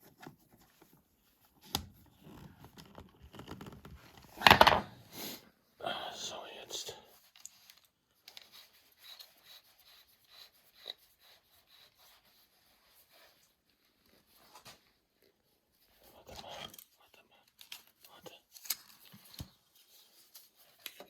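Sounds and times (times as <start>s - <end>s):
faint scratching and rustling: 6.3s - 21.0s.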